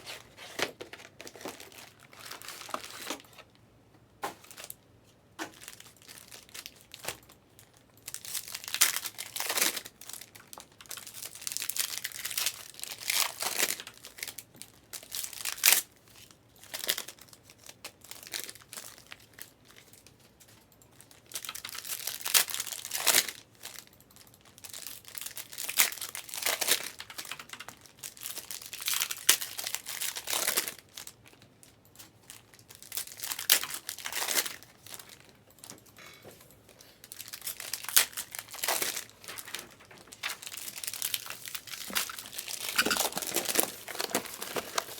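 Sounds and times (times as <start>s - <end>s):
plastic wrappers crinkling: 0.0s - 3.6s, 5.4s - 20.1s, 21.0s - 35.8s, 36.7s - 44.9s.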